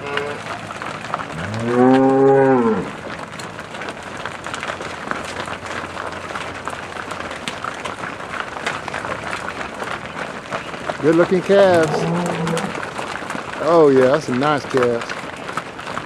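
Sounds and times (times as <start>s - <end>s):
cow mooing: 0.0s - 0.4s, 1.3s - 3.0s, 11.7s - 12.9s
patter of many hooves: 0.0s - 16.0s.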